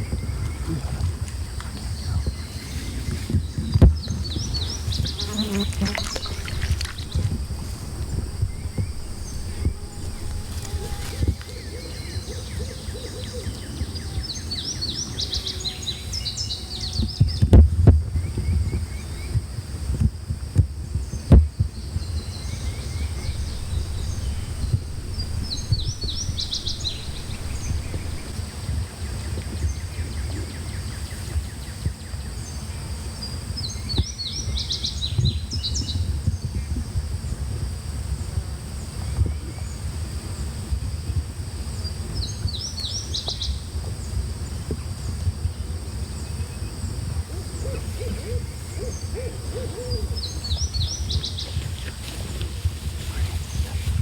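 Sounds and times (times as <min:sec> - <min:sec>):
songbird chirping: 0:02.0 - 0:13.8, 0:22.1 - 0:28.6
low hoots: 0:05.6 - 0:13.6, 0:22.8 - 0:28.5
steady low rumble: 0:05.9 - 0:11.8, 0:22.7 - 0:28.7.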